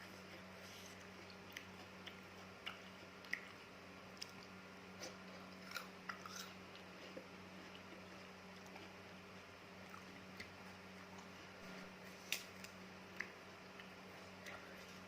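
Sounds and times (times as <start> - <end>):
faint low hum: 0.0 - 15.0
wet chewing crunches: 0.2 - 9.0.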